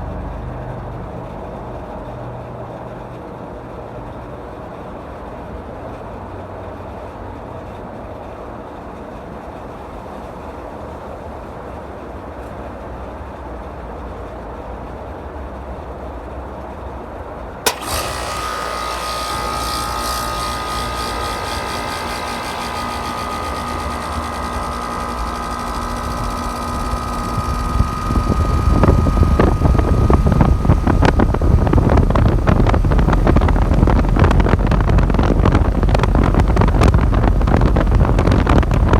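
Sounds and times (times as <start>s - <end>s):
mechanical hum with high whine: 0.0s - 38.9s
fan airflow rumble: 16.2s - 38.9s
air conditioner switch click: 17.7s - 34.2s.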